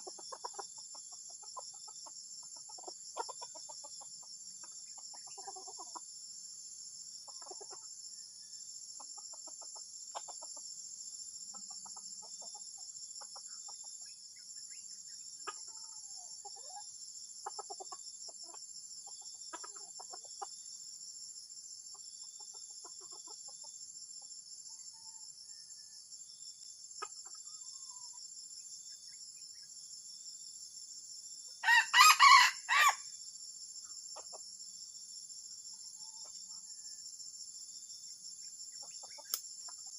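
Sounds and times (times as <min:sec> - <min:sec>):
junglefowl clucking: 0:00.0 - 0:06.1, 0:07.3 - 0:07.9, 0:09.0 - 0:10.7, 0:15.4 - 0:20.6, 0:22.4 - 0:23.7, 0:38.8 - 0:39.9
high-pitched insect chorus: 0:00.0 - 0:39.9
junglefowl crowing: 0:31.6 - 0:33.1.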